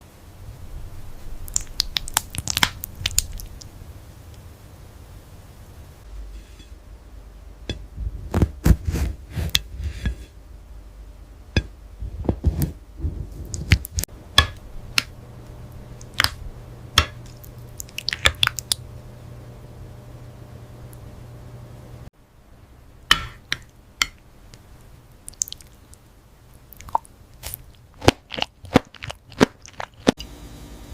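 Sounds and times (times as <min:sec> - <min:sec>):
wet squishes of gel: 0:01.4 - 0:03.7, 0:17.2 - 0:18.8, 0:25.2 - 0:26.0, 0:26.6 - 0:30.2.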